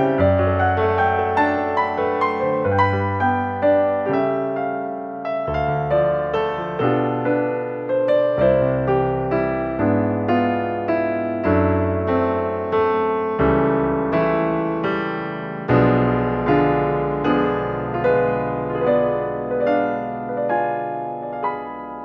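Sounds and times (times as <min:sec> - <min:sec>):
slow gentle piano music: 0:00.0 - 0:22.0.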